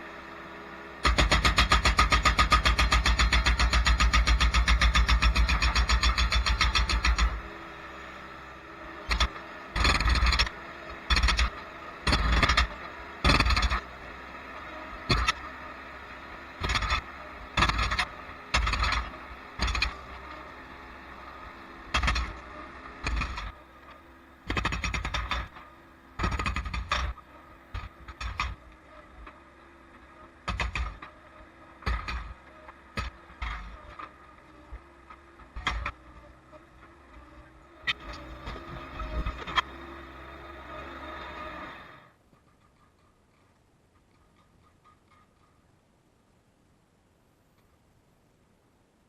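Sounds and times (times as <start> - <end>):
skid steer engine running: 0.0 - 42.6
hydraulic breaker hammering concrete: 1.0 - 7.5, 9.1 - 13.9, 15.0 - 15.5, 16.6 - 20.3, 24.5 - 25.6, 26.2 - 28.6, 30.4 - 31.1.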